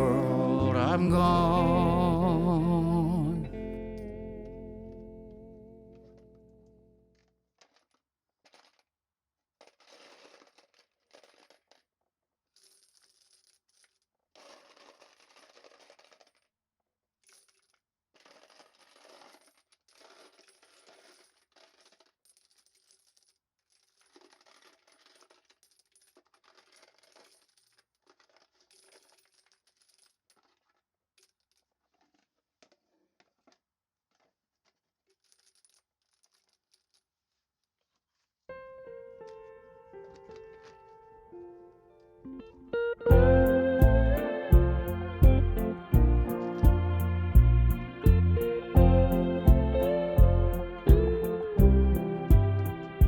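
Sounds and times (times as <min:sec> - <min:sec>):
cartridge cases rattling and clinking: 0:07.6 - 0:08.9, 0:09.6 - 0:11.9, 0:12.6 - 0:16.5, 0:17.2 - 0:37.1.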